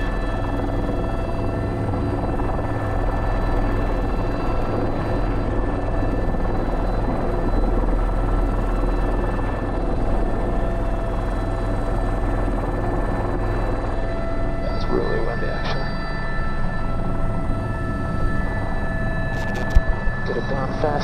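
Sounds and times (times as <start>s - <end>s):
helicopter rotor drone: 0.0s - 21.0s
high turbine engine whine: 0.0s - 21.0s.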